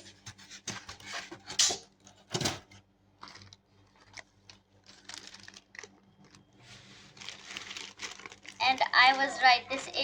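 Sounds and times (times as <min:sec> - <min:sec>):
packaging rustling: 0:03.2 - 0:09.5.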